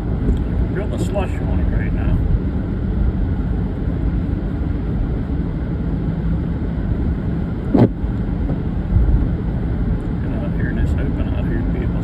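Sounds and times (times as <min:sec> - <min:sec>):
car road and engine rumble: 0:00.0 - 0:12.0
tyres on slushy road: 0:00.0 - 0:12.0
short thump: 0:07.7 - 0:09.3.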